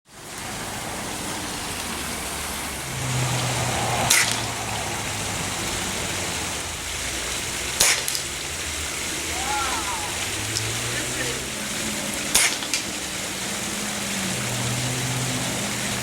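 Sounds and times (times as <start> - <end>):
pellet gun shots: 7.8 - 8.2, 12.3 - 12.8.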